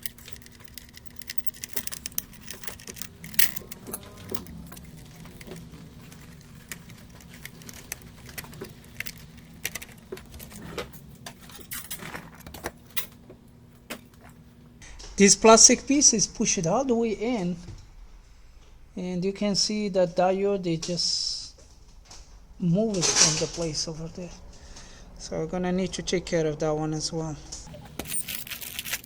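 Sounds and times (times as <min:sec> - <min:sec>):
metal tools tapping circuit board: 0:00.0 - 0:04.5
steady low hum: 0:00.0 - 0:29.0.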